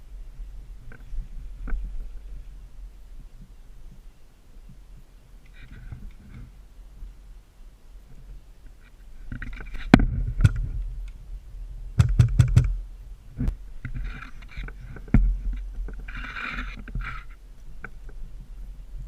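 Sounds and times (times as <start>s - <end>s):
rustling: 7.9s - 19.0s.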